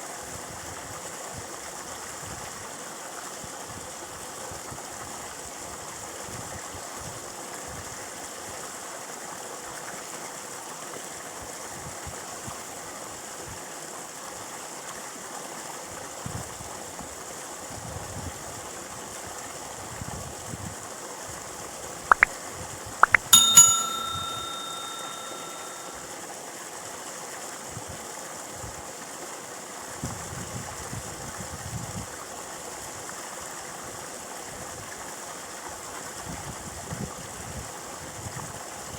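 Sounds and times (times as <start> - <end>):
quick clicks: 23.0 - 26.0
small metal bell ringing: 23.0 - 26.0.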